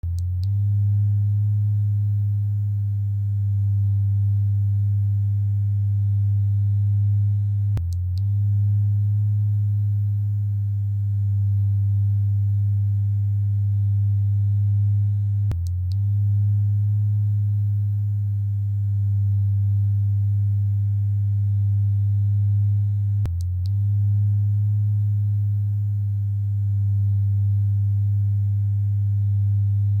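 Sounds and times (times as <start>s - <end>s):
electric vibrator buzzing: 0.0s - 30.0s.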